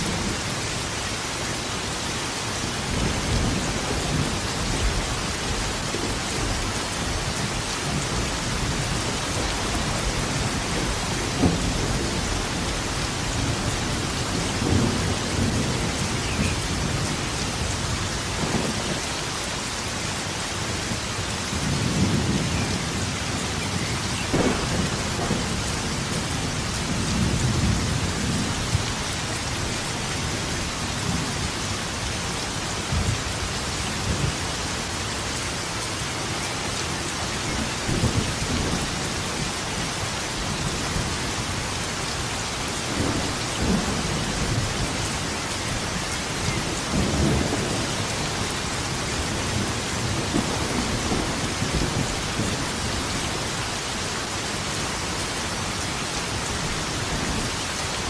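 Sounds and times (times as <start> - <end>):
heavy rain falling: 0.0 - 58.0
thunder rumbling: 2.8 - 19.2, 21.5 - 33.3, 42.8 - 53.6.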